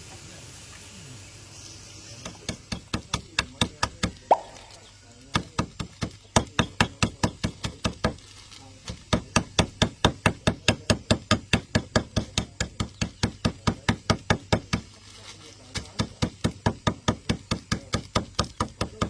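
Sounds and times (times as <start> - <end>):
rapid regular knocking: 2.2 - 4.4.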